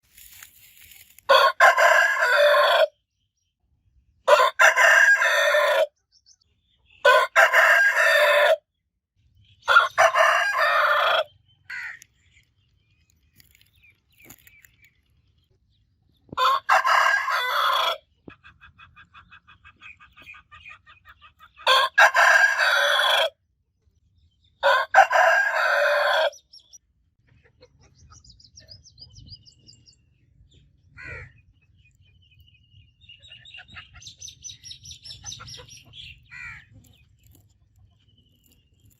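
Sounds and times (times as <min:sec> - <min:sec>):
rooster crowing: 0:01.3 - 0:02.9, 0:04.3 - 0:05.9, 0:07.1 - 0:08.6, 0:09.7 - 0:11.3, 0:16.4 - 0:18.0, 0:21.7 - 0:23.4, 0:24.6 - 0:26.4.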